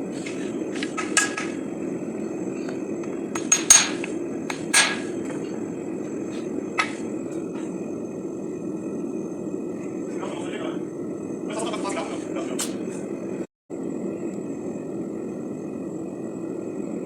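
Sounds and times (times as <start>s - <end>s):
hammer striking steel on anvil: 3.4s - 5.2s.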